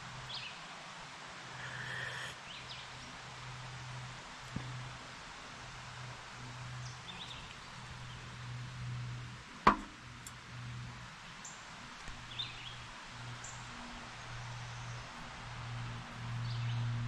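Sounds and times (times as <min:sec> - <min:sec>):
faint bird chirps: 0:01.4 - 0:02.8
sharp knock: 0:09.7 - 0:09.9.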